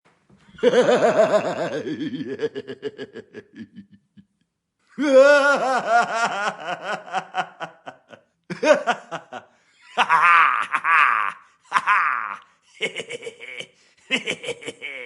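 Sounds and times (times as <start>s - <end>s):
high-pitched cartoon cackling laugh: 5.0s - 15.0s.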